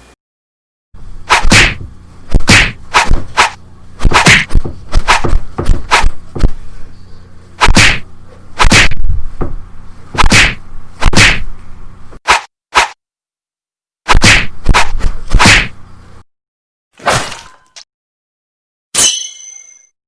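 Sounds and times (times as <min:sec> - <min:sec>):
punch and kick impacts: 0:01.3 - 0:06.5, 0:07.6 - 0:08.0, 0:08.6 - 0:09.6, 0:10.2 - 0:11.5, 0:14.1 - 0:15.8.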